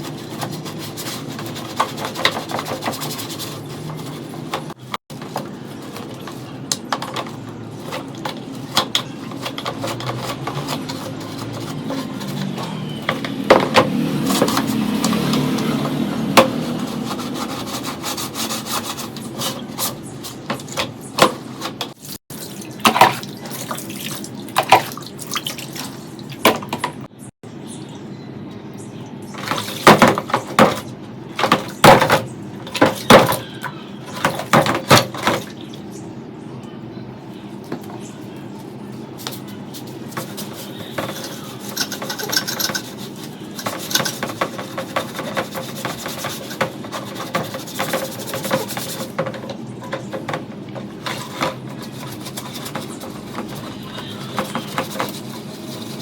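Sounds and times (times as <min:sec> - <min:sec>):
tools clicking and knocking: 0:40.2 - 0:55.3.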